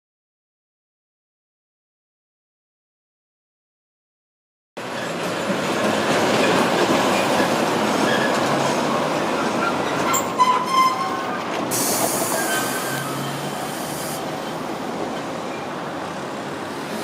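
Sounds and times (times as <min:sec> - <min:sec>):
streetcar rumbling on rails: 0:04.8 - 0:17.0
wheel squeals: 0:08.0 - 0:14.6
high hiss: 0:11.7 - 0:14.4.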